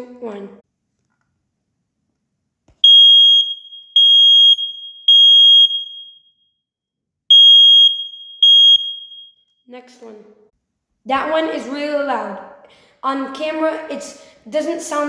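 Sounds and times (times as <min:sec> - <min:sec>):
smoke alarm beeping: 0:02.8 - 0:06.4, 0:07.3 - 0:09.5.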